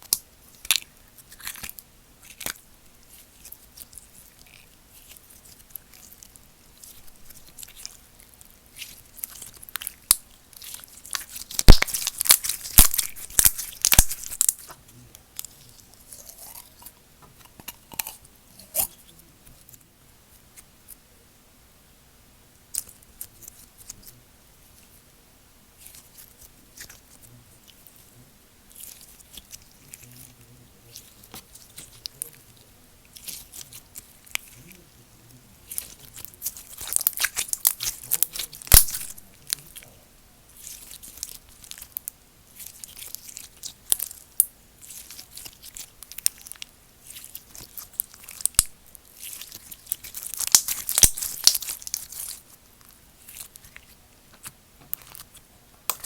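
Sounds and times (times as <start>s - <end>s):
slime squished by hand: 0.0s - 19.7s, 35.6s - 56.0s.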